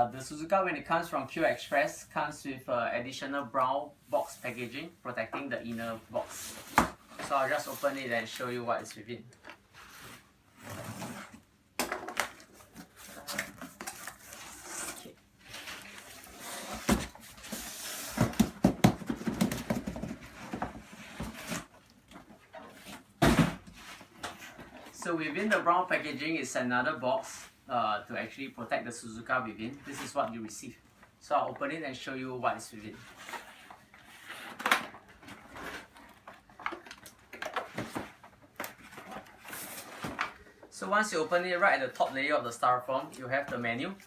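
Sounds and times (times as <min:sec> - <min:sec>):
cardboard scraping and rustling: 0:05.4 - 0:08.6, 0:09.6 - 0:11.4, 0:12.1 - 0:25.7, 0:32.9 - 0:40.4.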